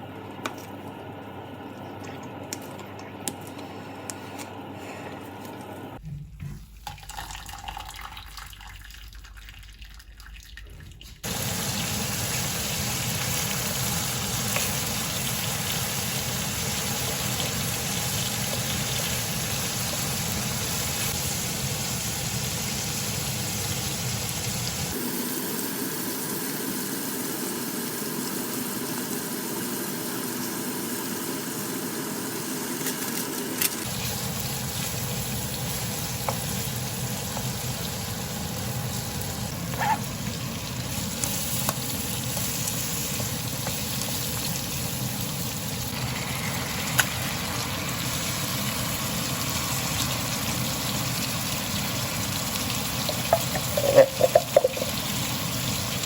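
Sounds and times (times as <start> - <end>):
food sizzling in a pan: 11.2 - 56.0.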